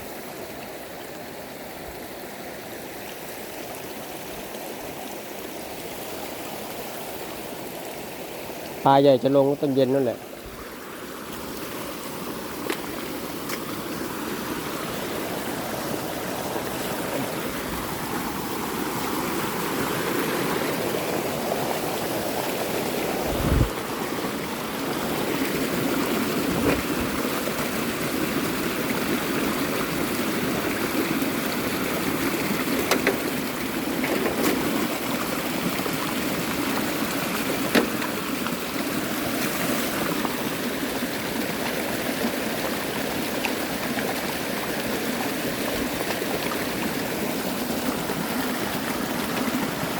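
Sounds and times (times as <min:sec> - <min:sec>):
runoff water rushing: 0:00.0 - 0:49.9.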